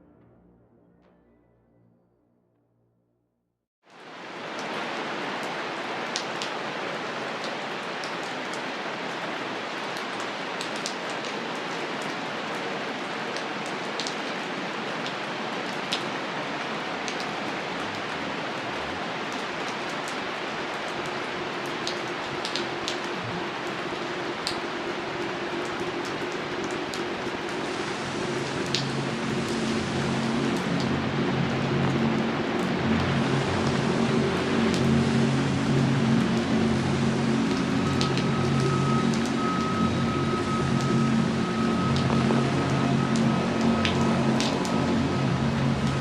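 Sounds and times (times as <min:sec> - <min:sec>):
steady rain: 0:03.8 - 0:46.0
sharp drips: 0:16.9 - 0:46.0.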